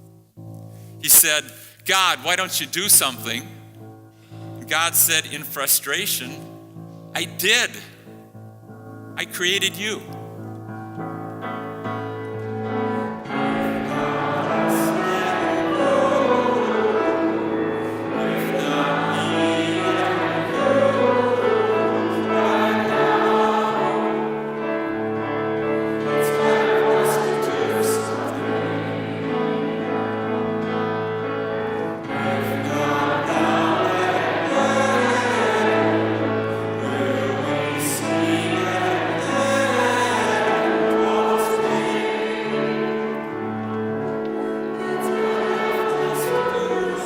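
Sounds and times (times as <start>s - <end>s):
instrumental accompaniment: 0.0s - 47.0s
choir singing: 12.5s - 47.0s.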